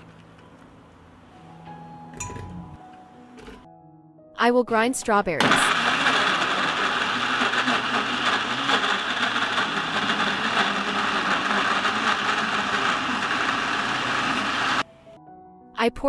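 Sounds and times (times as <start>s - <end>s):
electric blender running: 5.4s - 14.8s.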